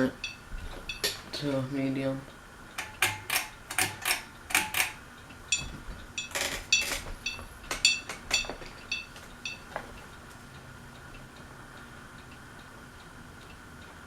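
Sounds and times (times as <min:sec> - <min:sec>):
pull chain clinking against glass: 0:02.8 - 0:09.6.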